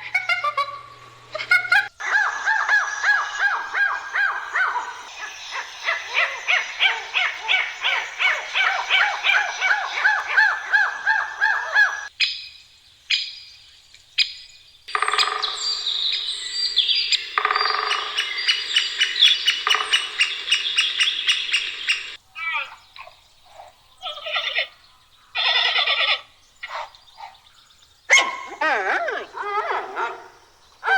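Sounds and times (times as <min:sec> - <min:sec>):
sweeping animal calls: 0:00.0 - 0:12.1, 0:14.9 - 0:30.9
chorus of chirping animal calls: 0:00.0 - 0:12.2, 0:14.9 - 0:30.9.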